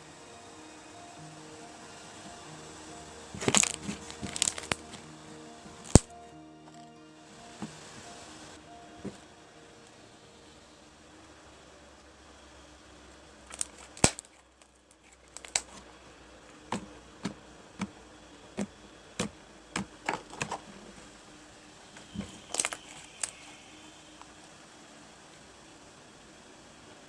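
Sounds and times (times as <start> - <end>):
slime clicking and popping: 3.4 - 4.9, 13.5 - 14.3, 22.5 - 23.3.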